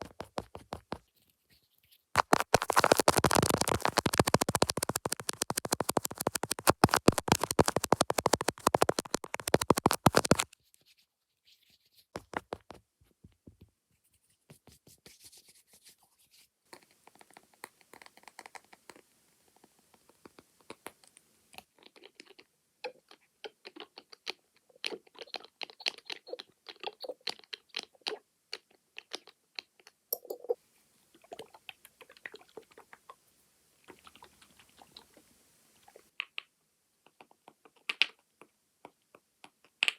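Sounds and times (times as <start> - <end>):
makeup tools tapping and scratching: 0.0 - 1.1, 2.2 - 10.6, 12.2 - 12.8.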